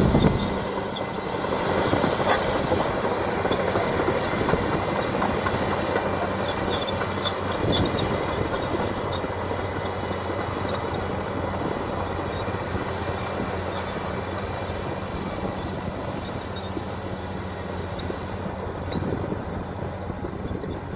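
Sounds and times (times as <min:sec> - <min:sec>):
steel tracks clattering: 0:00.0 - 0:15.1
bulldozer engine drone: 0:00.0 - 0:20.9.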